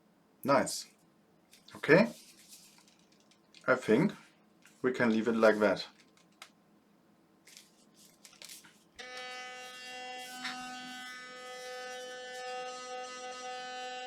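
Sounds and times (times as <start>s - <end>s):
electric toothbrush buzzing: 9.0s - 14.0s.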